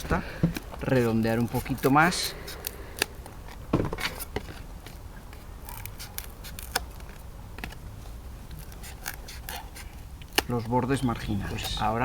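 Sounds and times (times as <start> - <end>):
scissors snipping foam: 0.5 - 7.8, 8.5 - 10.7.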